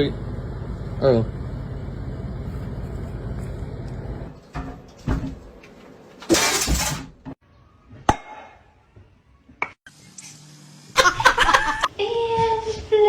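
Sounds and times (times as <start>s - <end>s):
glass shattering crash: 6.3s - 7.1s.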